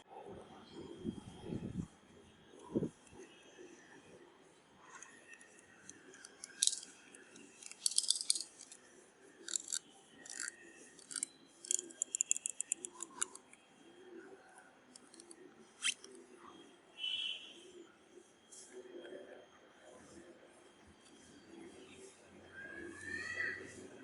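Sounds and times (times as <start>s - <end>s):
sharp clicks and scrapes: 4.9s - 13.6s, 14.9s - 16.2s.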